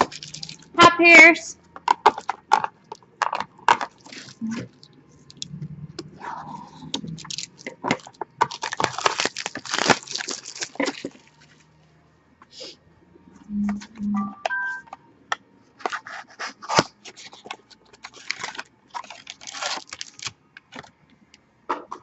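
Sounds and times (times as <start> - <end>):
packaging crinkling and tearing: 0.0 - 0.8, 3.3 - 5.5, 6.9 - 11.6, 15.8 - 20.9.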